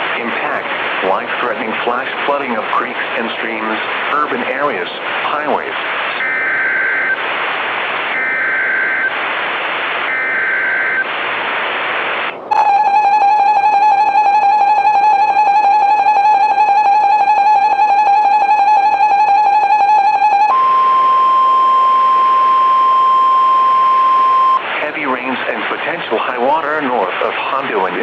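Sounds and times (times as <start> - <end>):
warbling data bursts: 6.2 - 11.1
two-tone attention signal: 12.5 - 24.6
steady warning tone: 12.5 - 24.7.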